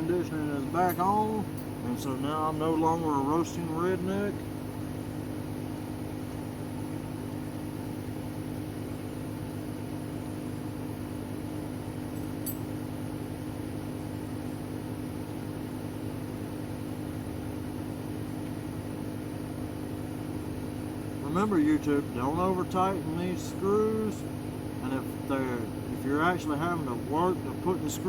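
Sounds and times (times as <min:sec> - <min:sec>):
car engine idling: 0:00.0 - 0:04.7, 0:21.0 - 0:28.0
air conditioning blower: 0:00.0 - 0:28.0.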